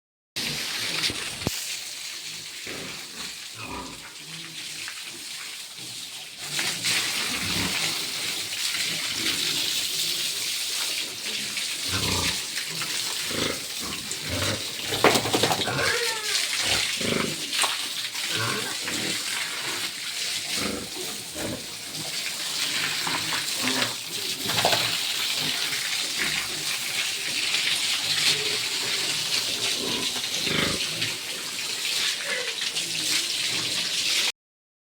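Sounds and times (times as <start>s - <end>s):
running water hiss: 0.4s - 34.3s
pigs grunting: 2.6s - 4.8s, 6.4s - 10.5s, 11.2s - 17.6s, 18.2s - 27.3s, 27.9s - 33.8s
pig squealing: 15.4s - 17.4s.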